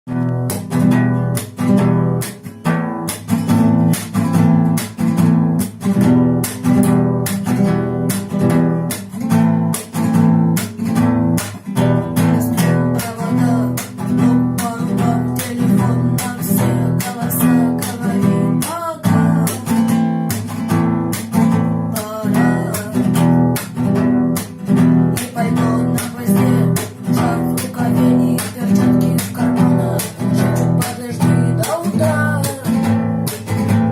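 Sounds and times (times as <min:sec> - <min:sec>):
acoustic guitar strumming chords: 0:00.1 - 0:33.9.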